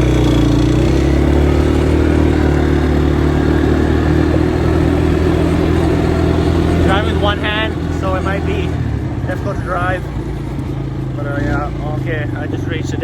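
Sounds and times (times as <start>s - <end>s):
off-road vehicle engine running: 0.0s - 13.0s.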